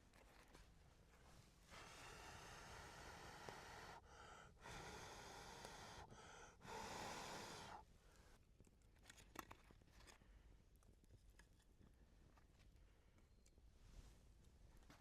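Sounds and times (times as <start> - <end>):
person blowing out breaths: 1.8 - 7.8
faint ticks and clicks: 5.5 - 5.8.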